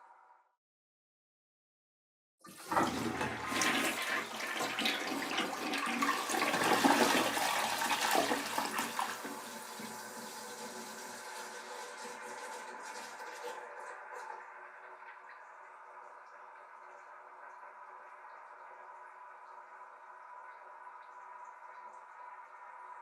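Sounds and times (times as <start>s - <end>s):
water running: 2.4s - 22.6s
toilet flushing: 2.4s - 23.0s.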